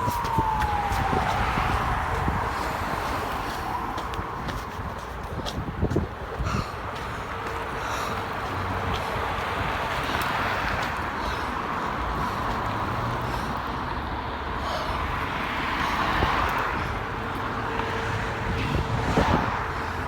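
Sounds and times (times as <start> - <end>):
wind on microphone: 0.0 - 7.8, 18.0 - 20.0
road traffic rushing: 0.0 - 20.0.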